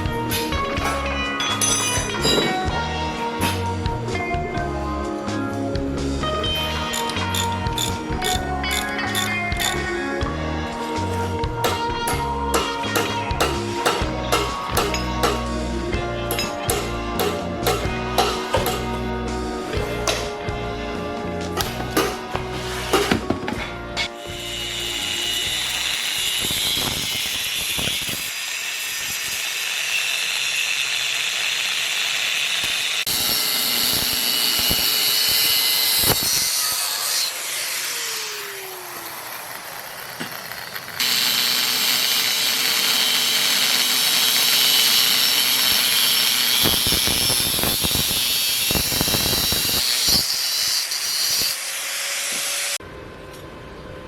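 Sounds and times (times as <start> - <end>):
power tools grinding metal: 0.0 - 52.8.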